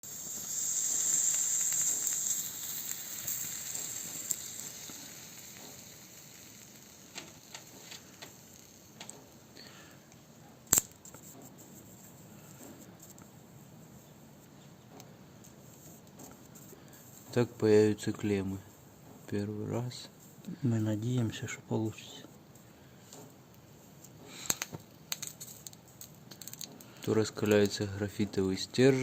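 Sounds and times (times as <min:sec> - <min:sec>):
sizzling hiss: 0:00.0 - 0:29.0
small clicks: 0:00.4 - 0:09.4, 0:24.4 - 0:27.8.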